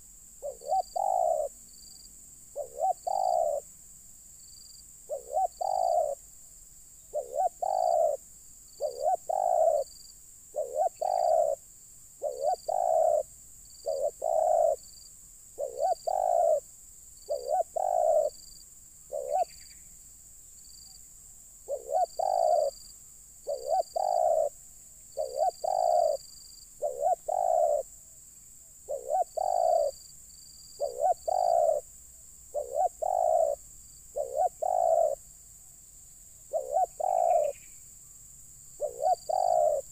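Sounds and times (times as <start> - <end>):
dove cooing: 0.4 - 1.6, 2.5 - 3.7, 5.1 - 6.2, 7.1 - 8.2, 8.8 - 9.9, 10.5 - 14.9, 15.6 - 18.4, 19.1 - 19.6, 21.7 - 22.8, 23.4 - 27.9, 28.9 - 30.0, 30.8 - 31.9, 32.5 - 35.2, 36.5 - 37.6, 38.8 - 39.9.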